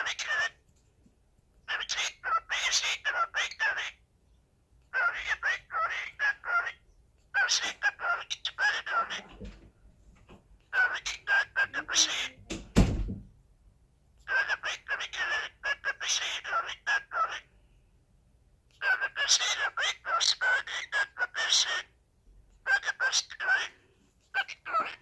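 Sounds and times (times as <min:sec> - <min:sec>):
cockatiel chirping: 0:00.0 - 0:00.5, 0:01.7 - 0:04.0, 0:04.9 - 0:09.3, 0:10.7 - 0:12.4, 0:14.2 - 0:17.4, 0:18.8 - 0:21.9, 0:22.6 - 0:23.7, 0:24.3 - 0:25.0.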